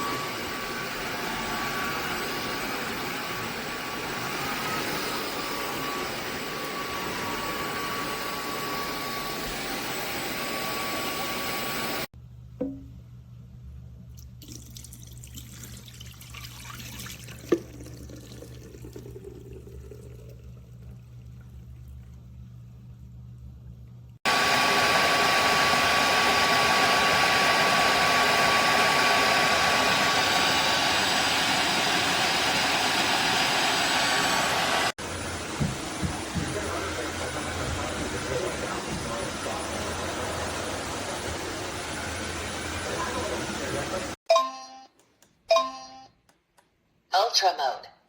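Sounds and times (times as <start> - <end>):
floor cleaner suction motor running: 0.0 - 12.1, 24.3 - 44.2
low steady hum: 12.2 - 24.2.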